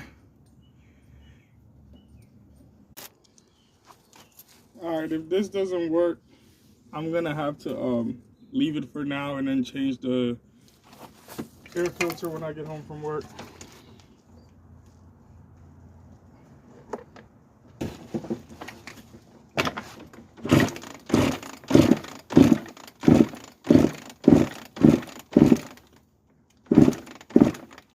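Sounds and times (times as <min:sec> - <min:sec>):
dirt bike engine cranking: 0:20.4 - 0:27.9.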